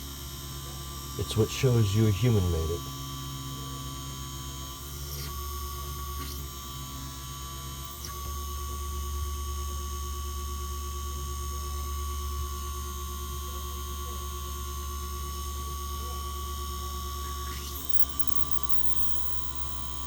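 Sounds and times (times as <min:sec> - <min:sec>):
electrical hum: 0:14.0 - 0:20.0.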